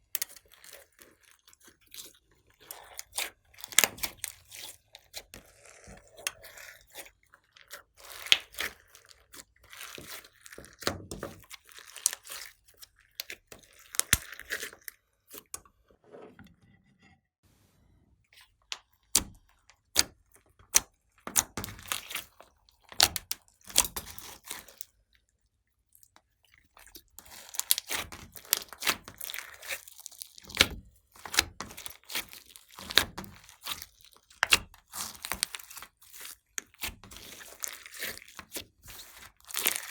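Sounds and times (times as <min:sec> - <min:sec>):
slime popping and crackling: 0:08.0 - 0:14.8, 0:20.7 - 0:24.8, 0:27.2 - 0:39.9.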